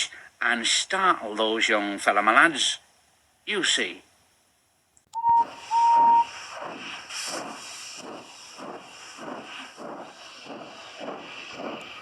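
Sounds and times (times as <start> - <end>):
steam locomotive whistle toots: 5.2 - 6.4
steam engine chuffing: 5.5 - 12.0.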